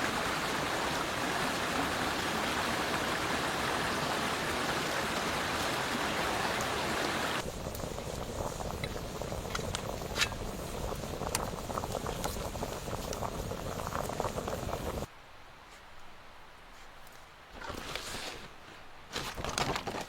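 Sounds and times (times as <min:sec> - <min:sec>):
flowing stream rushing: 0:00.0 - 0:15.0
pot bubbling on the boil: 0:03.9 - 0:15.1.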